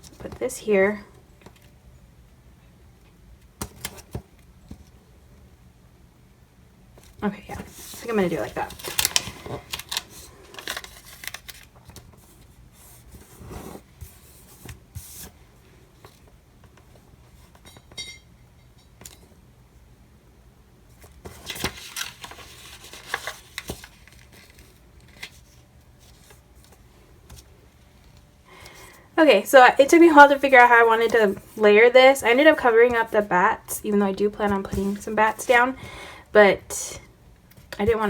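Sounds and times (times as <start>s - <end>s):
paper and stickers rustling: 7.0s - 15.4s, 20.9s - 29.0s, 29.6s - 36.0s, 37.5s - 38.0s.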